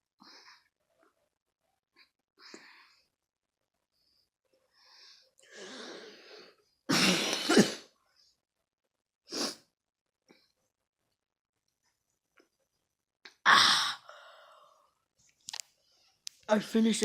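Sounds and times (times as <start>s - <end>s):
person coughing: 6.9s - 7.9s.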